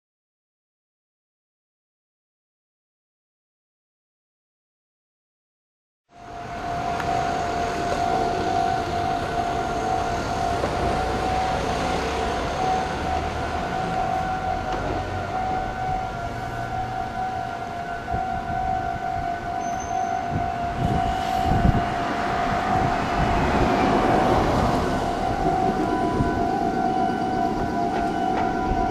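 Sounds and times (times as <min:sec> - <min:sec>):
level crossing warning bell: 0:06.2 - 0:28.9
train rumbling: 0:06.2 - 0:28.9.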